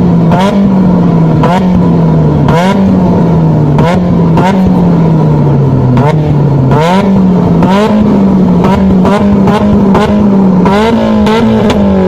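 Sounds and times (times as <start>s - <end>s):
car engine revving: 0.0s - 12.0s
exhaust cracks: 0.0s - 12.0s.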